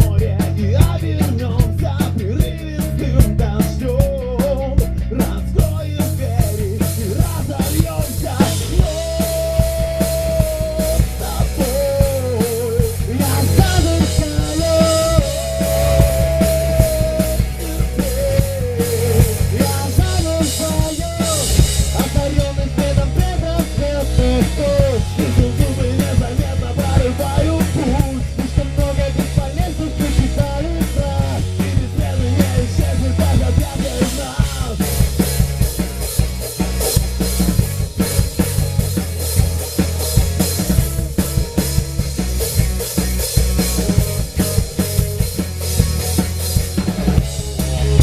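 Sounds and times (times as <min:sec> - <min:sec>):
bass: 0:00.0 - 0:48.0
drum kit: 0:00.0 - 0:48.0
gliding melodic lead line: 0:07.7 - 0:27.7, 0:32.9 - 0:48.0.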